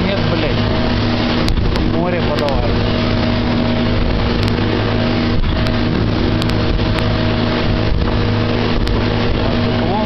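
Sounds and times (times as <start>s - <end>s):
motorboat engine humming: 0.0s - 10.0s.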